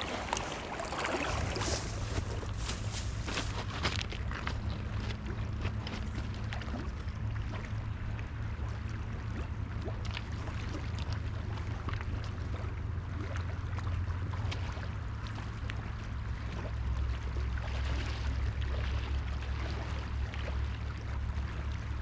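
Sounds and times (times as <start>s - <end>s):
river current rushing: 0.0s - 3.8s.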